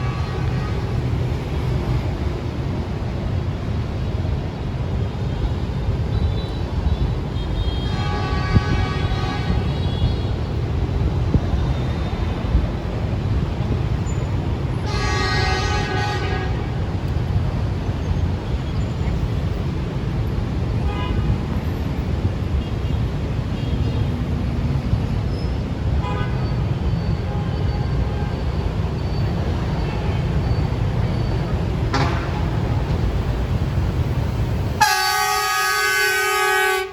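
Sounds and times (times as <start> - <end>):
locomotive horn blasts: 0.0 - 1.6, 7.4 - 10.4, 14.8 - 17.0, 20.8 - 21.6, 26.0 - 28.6, 29.6 - 33.0, 34.8 - 36.9
locomotive rumbling past: 10.3 - 36.9.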